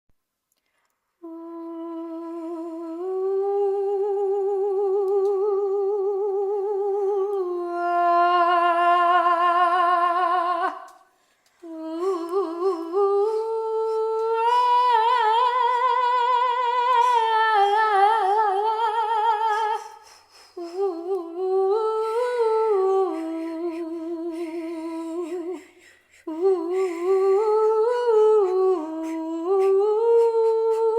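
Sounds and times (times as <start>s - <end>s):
person humming with vibrato: 1.2s - 10.9s, 26.3s - 30.9s
person breathing: 19.5s - 20.9s, 23.0s - 30.9s.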